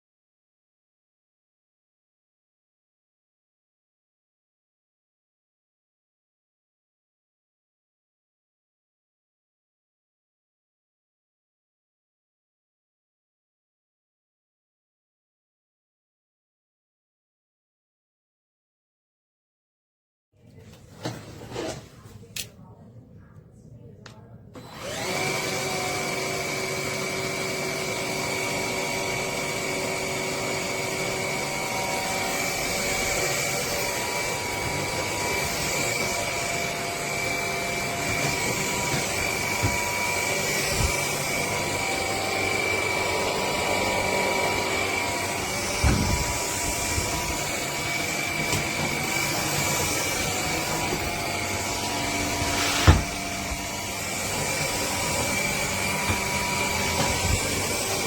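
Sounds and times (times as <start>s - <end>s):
stick vacuum whining: 24.6s - 58.0s.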